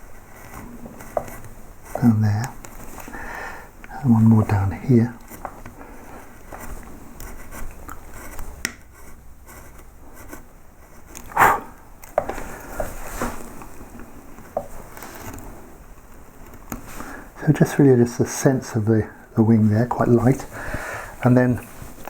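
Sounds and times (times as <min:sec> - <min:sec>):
carving tool scraping wood: 0:00.1 - 0:03.1, 0:04.2 - 0:13.6.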